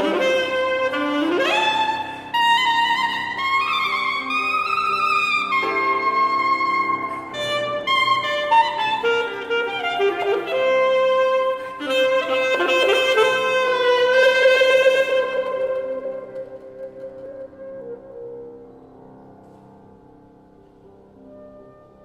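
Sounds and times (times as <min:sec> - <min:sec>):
alto saxophone: 0:00.0 - 0:19.6
piano accompaniment: 0:00.0 - 0:22.0.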